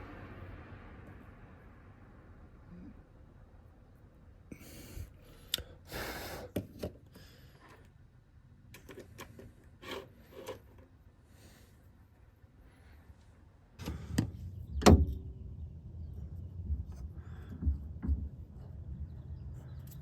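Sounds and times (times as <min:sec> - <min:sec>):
scraping and rubbing: 0:09.8 - 0:10.8.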